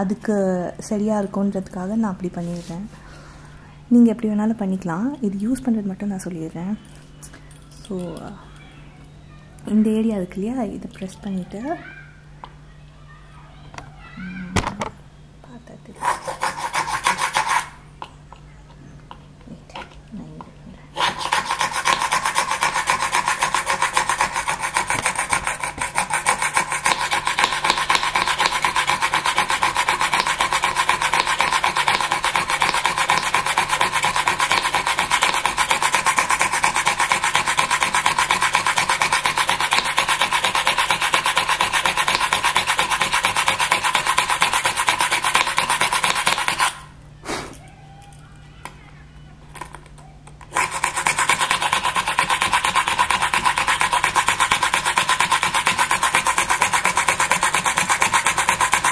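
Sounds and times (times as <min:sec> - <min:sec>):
hand drill grinding into board: 0:16.0 - 0:17.8, 0:21.0 - 0:46.8, 0:50.5 - 0:58.9.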